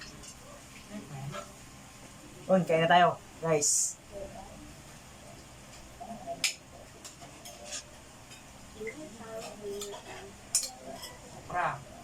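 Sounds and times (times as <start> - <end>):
cutlery clinking on plates: 9.4 - 11.2.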